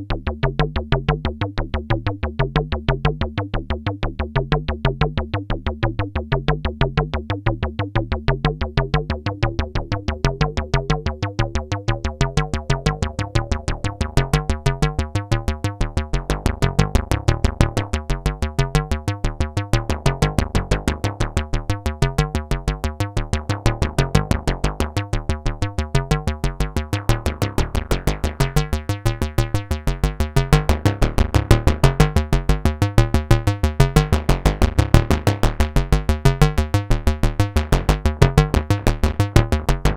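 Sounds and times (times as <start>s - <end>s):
synthesizer bass line: 8.5s - 39.9s.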